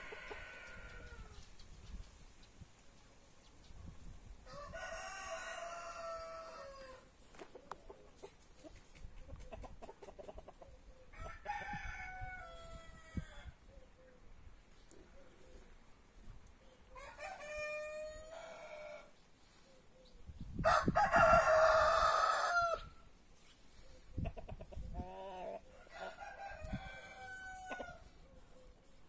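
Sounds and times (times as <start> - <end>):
roosters crowing: 0.0 - 1.4, 4.4 - 7.1, 11.1 - 13.7, 16.9 - 19.2, 20.6 - 23.1, 24.9 - 28.4
chicken clucking: 7.4 - 10.8, 24.0 - 25.7.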